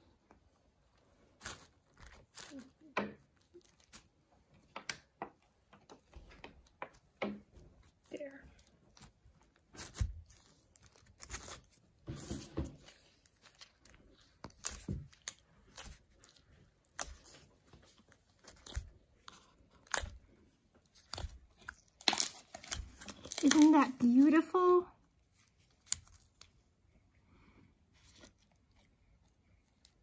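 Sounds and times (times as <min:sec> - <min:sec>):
slime crackling and popping: 0:01.4 - 0:04.1, 0:18.1 - 0:24.1, 0:25.7 - 0:26.6.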